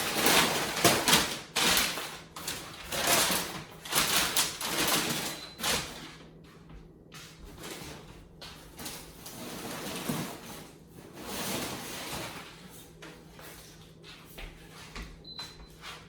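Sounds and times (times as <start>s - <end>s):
cardboard and paper rustling: 0.0s - 6.1s.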